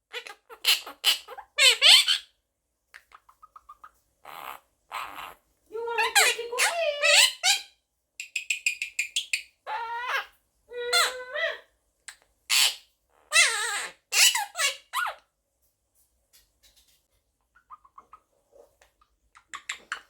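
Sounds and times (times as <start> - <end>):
parakeet chattering: 0.1 - 2.3, 12.5 - 15.1, 17.6 - 18.3, 19.4 - 20.0
parakeet squawky calls: 12.5 - 15.1.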